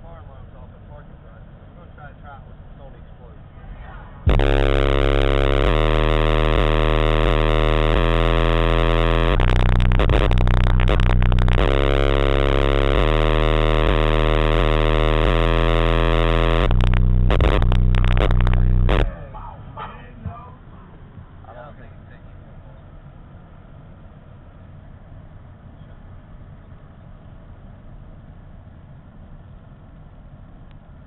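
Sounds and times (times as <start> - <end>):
loud distorted subwoofer bass: 4.2 - 21.5.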